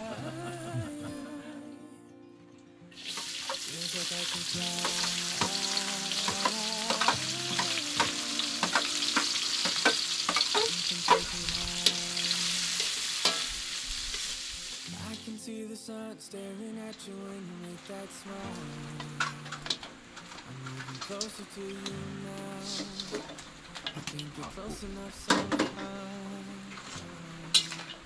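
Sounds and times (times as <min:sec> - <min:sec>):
food sizzling in a frying pan: 0:03.0 - 0:15.3.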